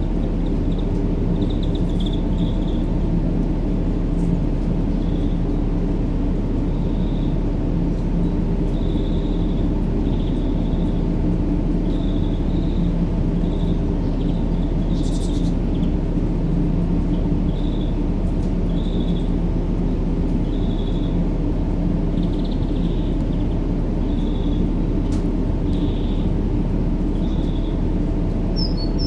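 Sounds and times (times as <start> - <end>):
faint steady hum: 0.0 - 29.0
high bird chirps: 28.6 - 29.0.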